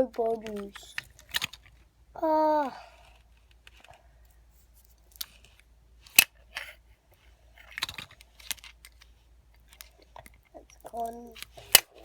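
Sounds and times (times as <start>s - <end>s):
plastic packaging clicks and rustles: 0.2s - 1.9s, 7.5s - 12.0s.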